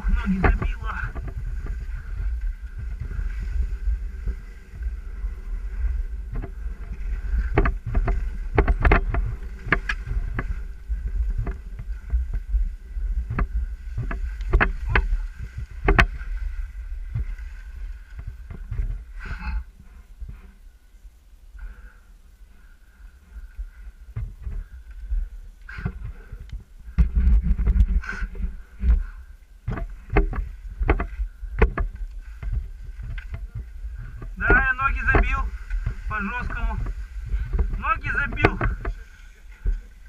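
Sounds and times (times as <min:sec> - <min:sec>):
wind rumbling on microphone: 0:00.0 - 0:40.0
sharp clicks and knocks: 0:06.3 - 0:10.6, 0:13.3 - 0:16.2, 0:29.6 - 0:39.0.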